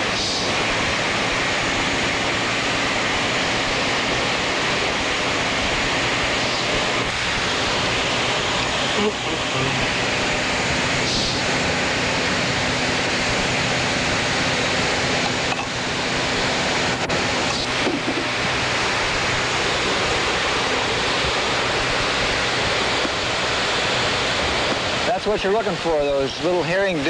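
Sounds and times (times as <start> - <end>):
wind and water rushing around boat: 0.0 - 27.0.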